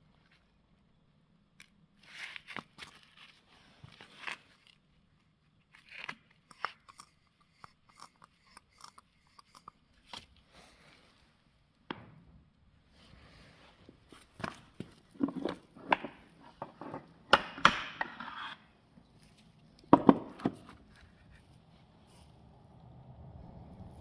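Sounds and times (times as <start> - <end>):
tools clicking and tapping: 6.0 - 10.3.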